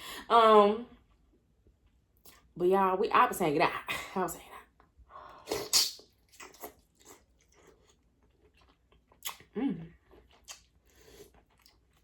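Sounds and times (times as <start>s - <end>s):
person chewing wet smacks: 5.6s - 12.0s.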